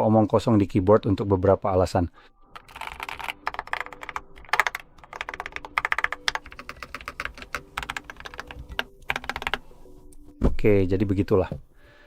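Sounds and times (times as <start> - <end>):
keyboard typing: 2.6 - 9.8.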